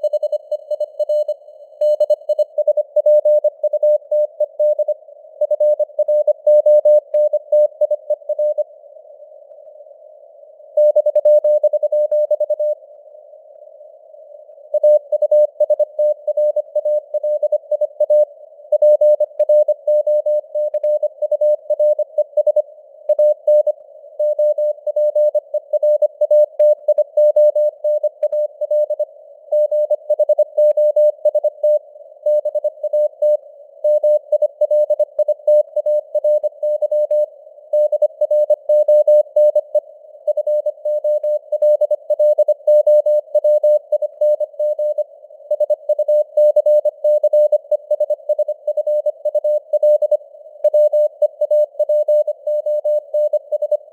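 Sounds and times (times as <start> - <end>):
morse code beeps: 14.8 - 53.9.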